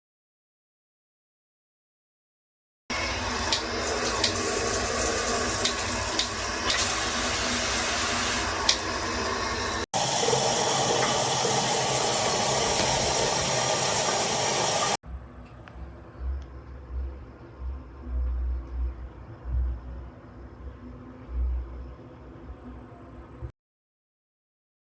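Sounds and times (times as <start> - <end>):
shower head water spraying: 2.9 - 15.0.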